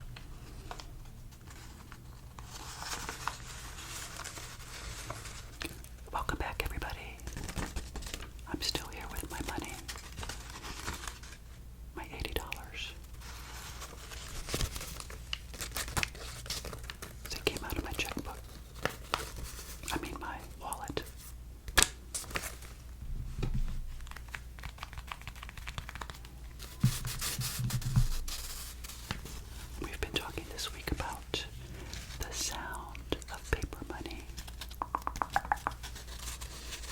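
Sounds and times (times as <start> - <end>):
low steady hum: 0.0 - 36.9
banknotes rustling and crinkling: 0.2 - 11.6, 12.2 - 36.9
paper banknotes rustling: 23.8 - 32.7, 33.3 - 36.9.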